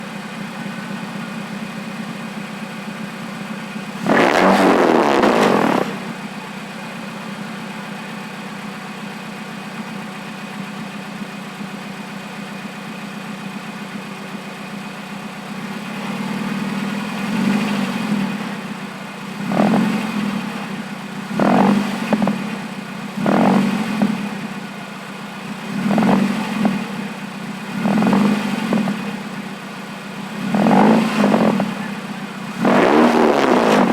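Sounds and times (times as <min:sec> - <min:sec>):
car engine idling: 0:00.0 - 0:33.9
engine revving: 0:04.0 - 0:06.4, 0:16.0 - 0:18.7, 0:19.3 - 0:24.6, 0:25.6 - 0:29.5, 0:30.2 - 0:33.9.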